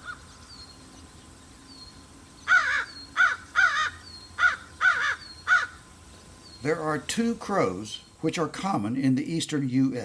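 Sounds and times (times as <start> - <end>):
crow cawing: 0.0 - 0.3, 2.5 - 5.9.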